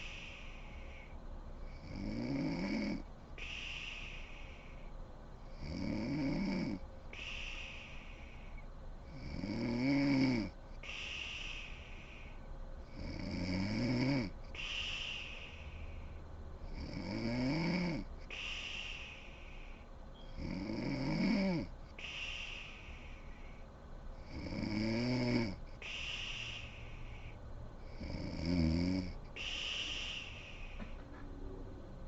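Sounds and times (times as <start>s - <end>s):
woman snoring: 1.7s - 4.5s, 5.5s - 8.1s, 9.1s - 11.8s, 12.9s - 15.6s, 16.7s - 19.3s, 20.4s - 22.9s, 24.2s - 30.6s.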